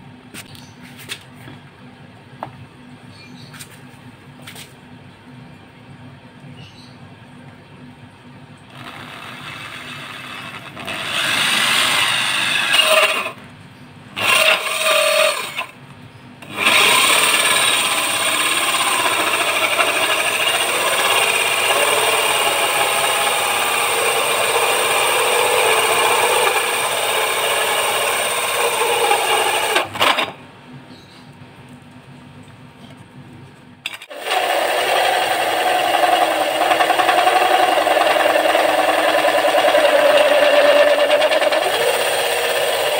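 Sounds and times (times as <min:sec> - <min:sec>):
hole saw drill cutting wood: 0:08.7 - 0:13.4, 0:14.2 - 0:15.7, 0:16.4 - 0:30.3, 0:33.9 - 0:42.9.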